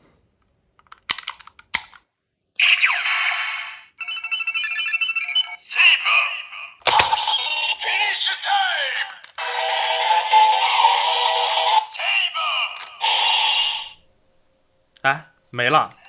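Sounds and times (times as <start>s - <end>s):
electronic toy jingle: 2.6s - 8.0s
toy recorded voice calling and singing: 2.6s - 14.0s.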